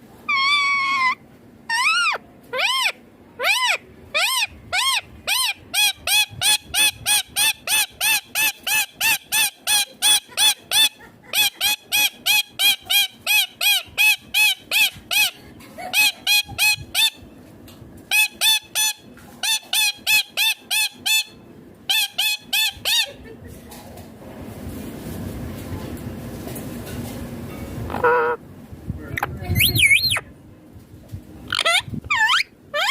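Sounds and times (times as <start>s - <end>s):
parakeet screeching: 0.3s - 10.2s, 27.9s - 28.4s, 29.2s - 30.2s, 31.5s - 32.9s.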